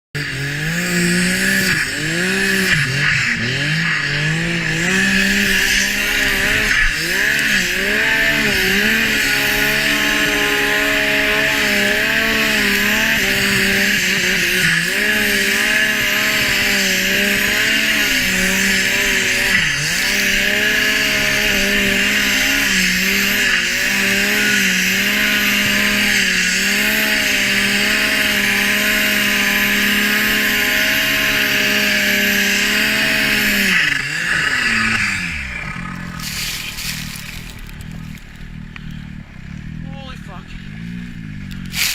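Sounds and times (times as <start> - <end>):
snowmobile engine revving: 0.0 - 41.9.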